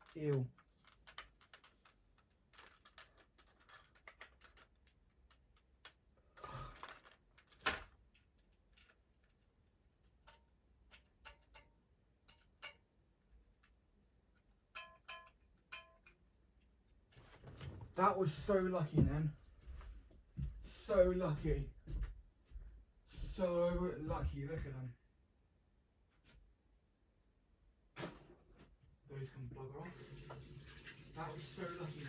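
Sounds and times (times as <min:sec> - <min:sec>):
batteries clinking: 0:00.0 - 0:09.0.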